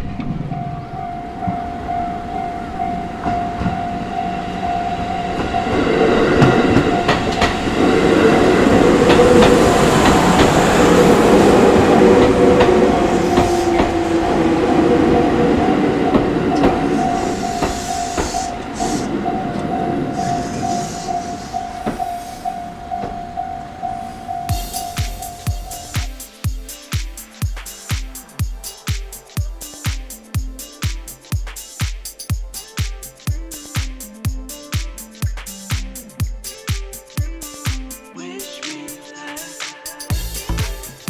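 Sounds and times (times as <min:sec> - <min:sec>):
train rumble: 0:00.0 - 0:37.8
level crossing bell dinging: 0:00.4 - 0:10.1.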